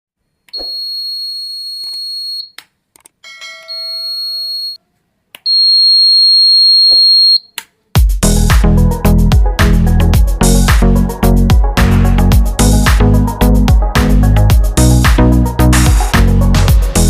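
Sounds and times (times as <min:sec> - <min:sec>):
chime-like ding: 0:03.2 - 0:04.5.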